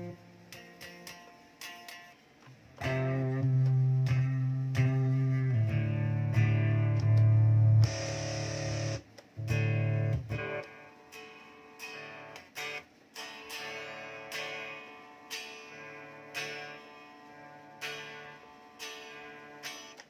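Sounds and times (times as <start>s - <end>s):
strummed guitar chords: 0.0s - 20.0s
heavy electric guitar chord: 2.8s - 10.6s.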